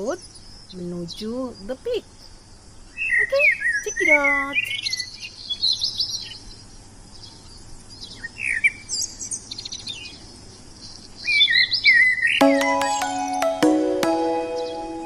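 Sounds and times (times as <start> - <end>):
songbirds chirping and whistling: 0.0 - 15.0.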